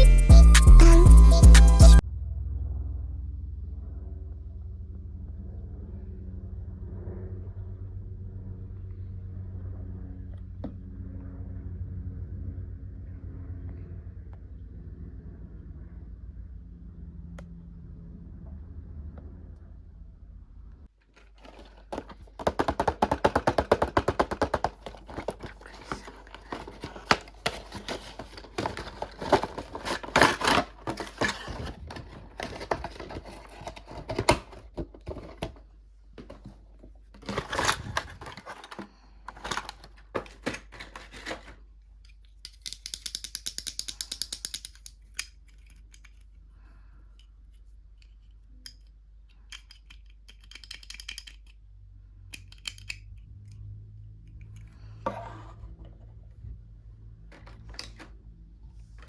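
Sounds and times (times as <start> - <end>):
packaging crinkling: 21.2 - 35.5, 37.2 - 41.6
small plastic clicks: 42.0 - 46.4, 48.0 - 51.7, 52.3 - 54.8.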